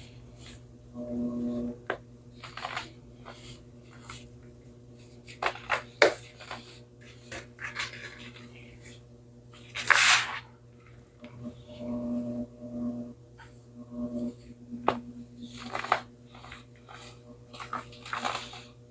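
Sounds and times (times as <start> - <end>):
baking soda crunching: 2.3 - 4.4, 15.5 - 18.8.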